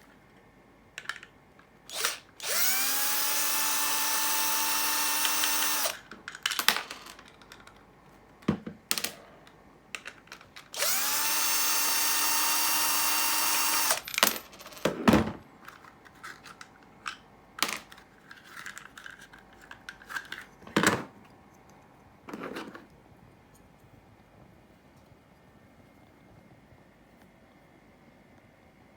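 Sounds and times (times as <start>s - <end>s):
electric drill running: 1.9s - 6.0s, 10.8s - 14.1s.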